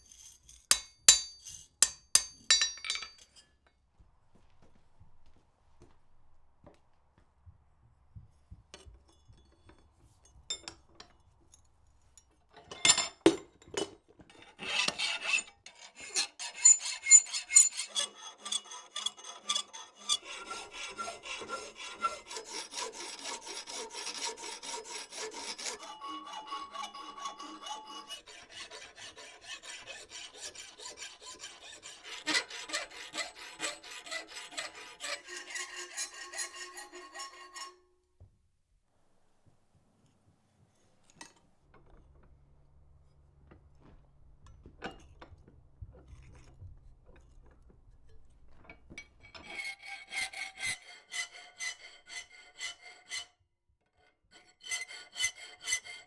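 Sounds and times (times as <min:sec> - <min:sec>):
file scraping on iron: 0:00.0 - 0:03.2, 0:14.3 - 0:37.9, 0:46.1 - 0:53.4, 0:54.0 - 0:56.0
sharp metal knocks: 0:00.7 - 0:03.2.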